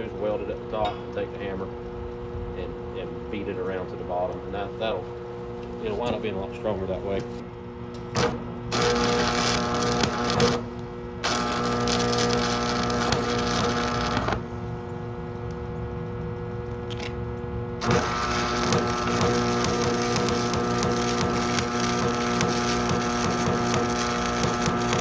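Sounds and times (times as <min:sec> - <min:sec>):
welding arc crackling and hissing: 0:05.5 - 0:07.4, 0:08.1 - 0:17.0, 0:17.8 - 0:25.0.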